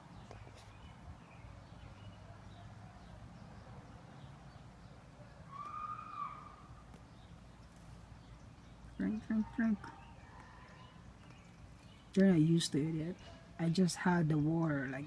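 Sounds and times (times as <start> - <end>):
drawn-out bird call: 5.2 - 12.1.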